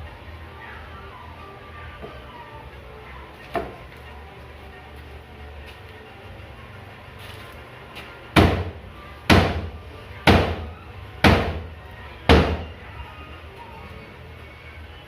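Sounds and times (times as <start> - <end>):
heavy blows on wooden cabinet: 8.4 - 12.8.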